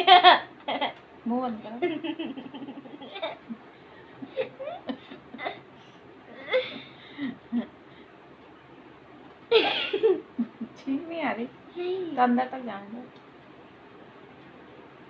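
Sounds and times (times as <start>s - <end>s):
boy giggling: 0.0s - 1.0s, 1.8s - 3.6s, 4.2s - 5.7s, 6.3s - 7.8s, 9.5s - 10.8s
boy laughing: 0.0s - 1.0s, 1.8s - 3.6s, 4.2s - 5.7s, 6.3s - 7.7s, 9.5s - 10.8s.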